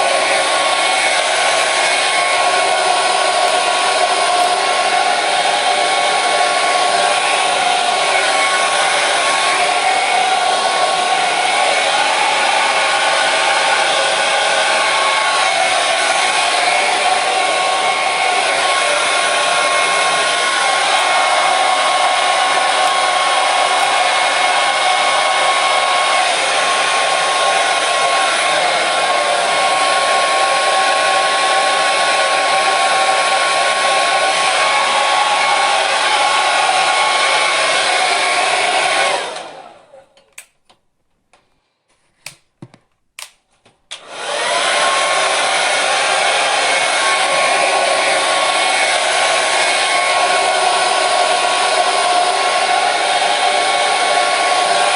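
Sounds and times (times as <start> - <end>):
hair dryer running: 0.0 - 40.5, 43.2 - 54.9
sharp clicks: 1.6 - 2.0, 43.2 - 43.6.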